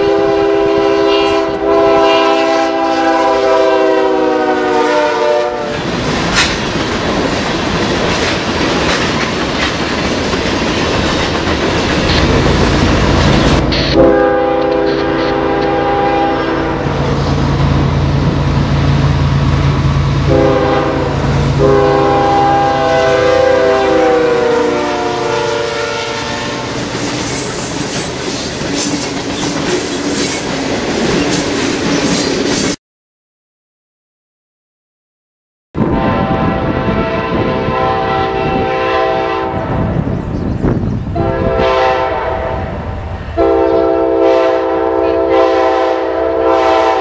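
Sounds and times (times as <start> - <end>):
locomotive air horn blasts: 0.0 - 5.8, 13.5 - 17.0, 20.2 - 26.9, 35.8 - 39.9, 41.2 - 47.0
passing train rumble and clatter: 0.0 - 32.8, 35.8 - 47.0.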